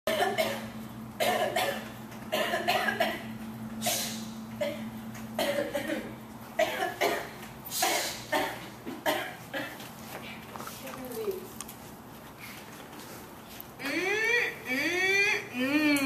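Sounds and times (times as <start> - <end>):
person coughing: 0.1 - 9.8.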